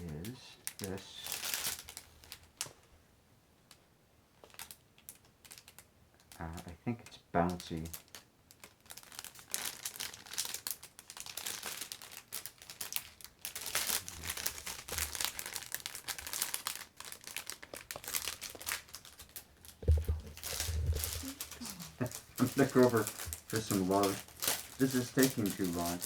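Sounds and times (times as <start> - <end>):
crinkly wrapping crackling: 0.0 - 2.9, 3.7 - 26.0
low thump: 19.8 - 21.2.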